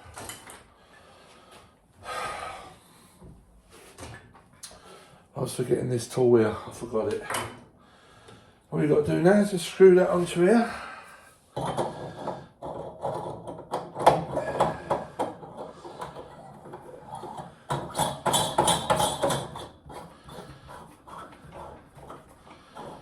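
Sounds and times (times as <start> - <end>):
plastic fittings knocking and clicking: 11.6 - 23.0
rasping plastic scraping: 11.6 - 23.0.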